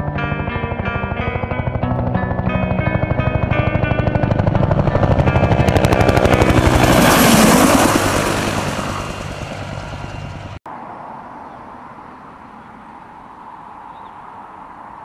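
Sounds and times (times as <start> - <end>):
guitar song: 0.0 - 10.5
helicopter rotor chop: 0.0 - 10.6.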